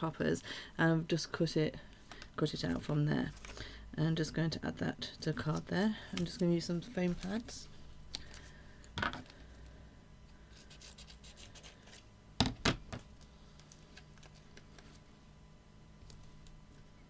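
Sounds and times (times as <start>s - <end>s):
paper rustling and scratching: 10.5s - 12.0s.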